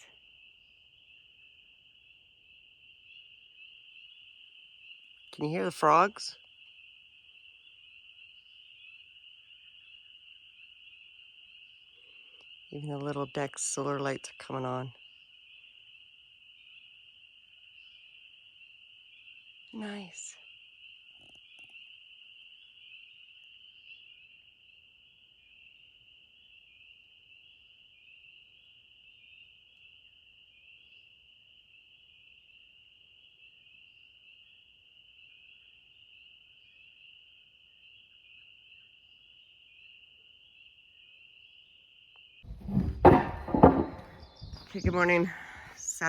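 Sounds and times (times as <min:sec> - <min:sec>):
frog chorus trilling: 0:00.0 - 0:42.0, 0:42.8 - 0:46.0
loud knocks: 0:42.5 - 0:45.3.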